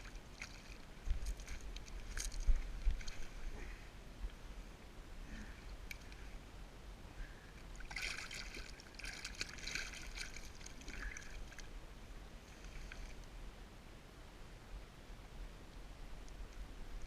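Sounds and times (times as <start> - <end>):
water splashing and sloshing: 0.0 - 3.8, 7.6 - 11.8, 12.5 - 13.3
faint low rumble: 0.0 - 17.0.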